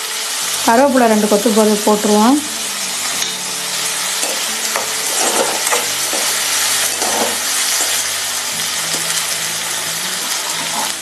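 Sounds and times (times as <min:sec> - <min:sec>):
vegetables sizzling in oil: 0:00.0 - 0:11.0
spoon scraping a pan: 0:03.1 - 0:08.1, 0:08.9 - 0:11.0.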